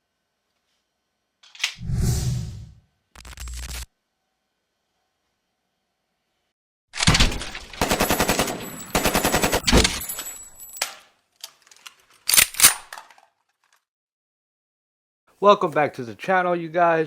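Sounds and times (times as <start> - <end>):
automatic gunfire bursts: 7.0 - 9.7
loud gunshots: 7.0 - 9.8.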